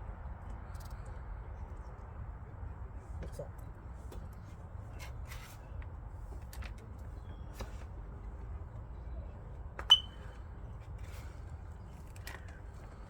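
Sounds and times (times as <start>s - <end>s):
sharp ringing clink: 9.9s - 10.2s.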